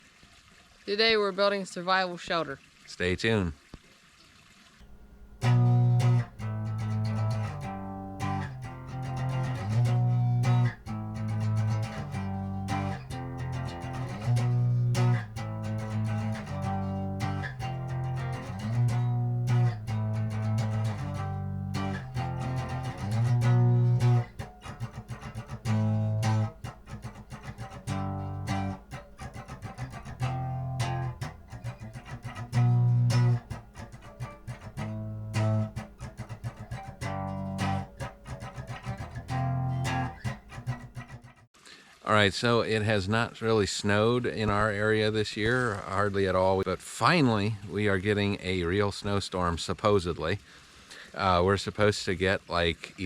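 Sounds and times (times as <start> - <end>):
guitar instrumental with bass: 4.8 - 41.5.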